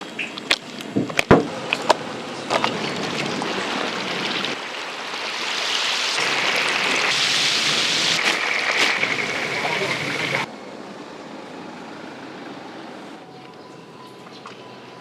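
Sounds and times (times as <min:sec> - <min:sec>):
oil sizzling in a deep fryer: 0:03.4 - 0:10.5.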